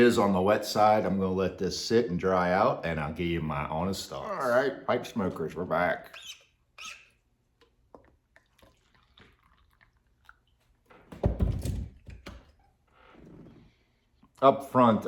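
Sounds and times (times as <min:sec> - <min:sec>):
wet clicks of lips on pipe: 0:06.1 - 0:10.8.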